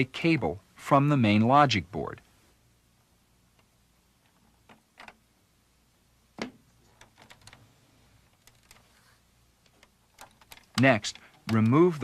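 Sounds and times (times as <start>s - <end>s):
plastic parts clicking and tapping: 3.5s - 5.2s, 6.4s - 8.9s, 9.6s - 12.0s.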